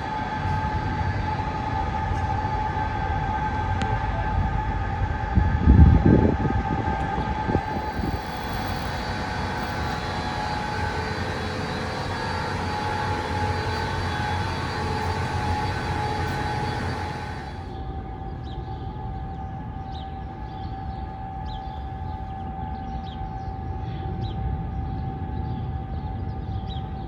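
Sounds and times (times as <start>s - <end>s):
building equipment humming: 0.0s - 17.9s
loud low rumble: 5.2s - 17.7s.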